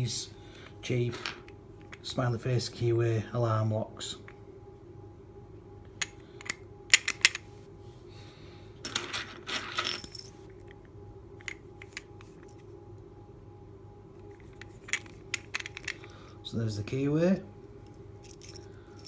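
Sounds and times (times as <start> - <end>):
padlock and key clinking: 14.6 - 16.2, 17.9 - 19.0.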